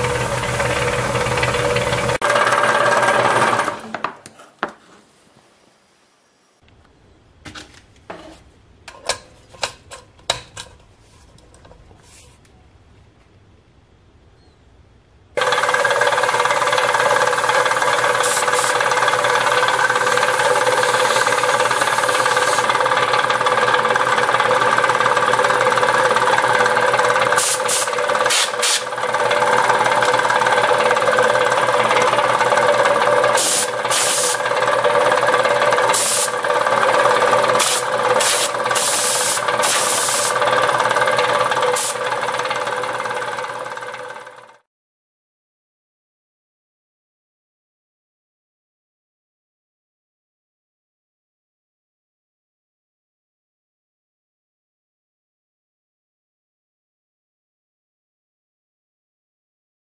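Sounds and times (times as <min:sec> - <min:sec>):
air compressor running: 0:00.0 - 0:03.9, 0:15.4 - 0:44.6
short sharp air hisses: 0:27.4 - 0:28.9, 0:33.4 - 0:34.4, 0:36.0 - 0:36.3, 0:37.6 - 0:40.4, 0:41.8 - 0:42.0.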